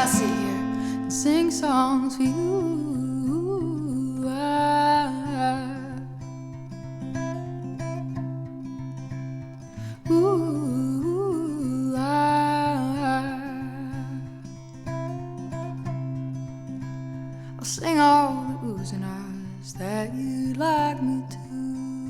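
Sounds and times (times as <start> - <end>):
guitar plucked notes: 0.0 - 2.6
woman's wordless vocal oohs: 0.0 - 3.6.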